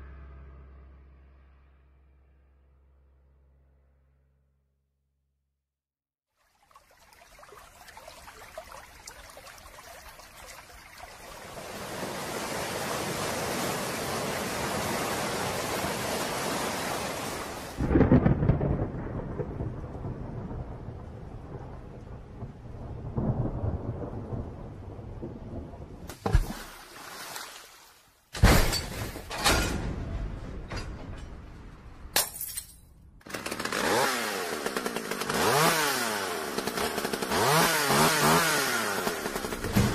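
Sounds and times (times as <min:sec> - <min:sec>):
thunder rumble: 0:17.8 - 0:26.1.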